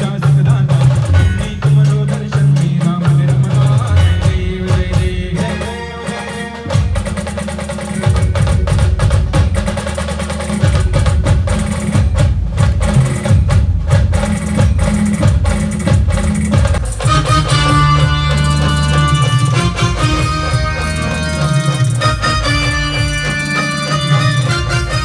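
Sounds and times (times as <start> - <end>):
loud band music with heavy drums: 0.0 - 25.0.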